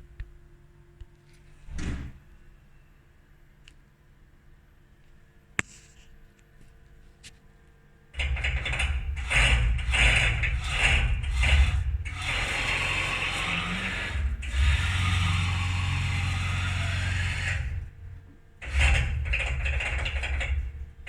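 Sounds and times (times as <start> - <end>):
machine hum: 8.2 - 21.0
ratchet-like clicking: 8.2 - 21.0.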